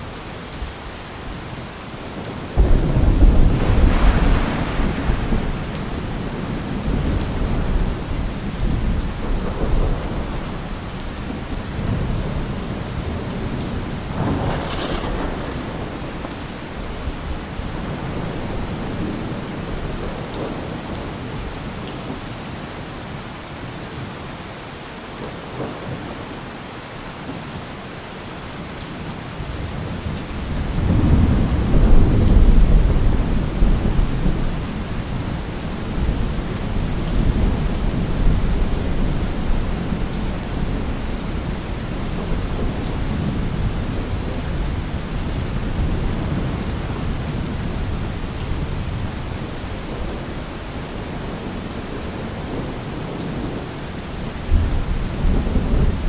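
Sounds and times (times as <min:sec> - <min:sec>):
heavy rain: 0:00.0 - 0:56.0
thunder rumbling: 0:02.6 - 0:21.4.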